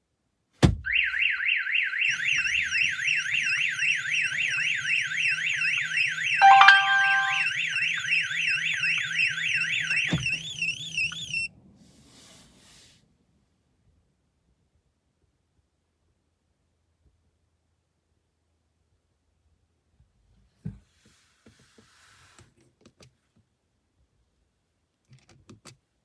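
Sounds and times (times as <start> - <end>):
car alarm siren warbling: 0.9 - 11.4
chime of steady tones: 6.4 - 7.5.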